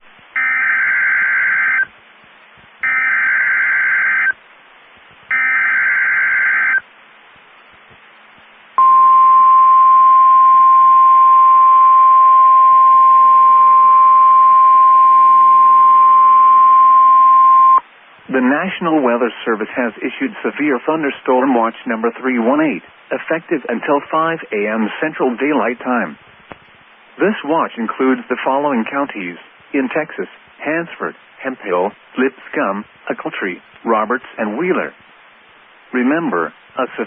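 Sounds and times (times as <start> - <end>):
low hiss: 0.0 - 37.0
steady alarm tone: 0.4 - 1.9, 2.8 - 4.4, 5.3 - 6.8
warbling digital header tones: 2.8 - 4.4.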